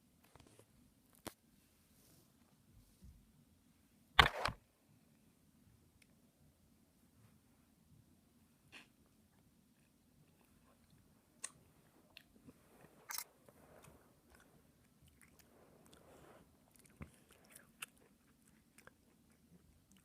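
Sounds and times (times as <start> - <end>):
chewing fruit mouth sounds: 13.8 - 16.0, 16.7 - 20.0.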